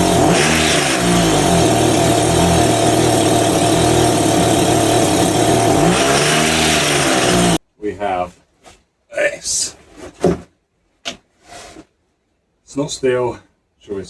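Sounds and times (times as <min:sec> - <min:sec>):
petrol strimmer engine running: 0:00.0 - 0:07.6.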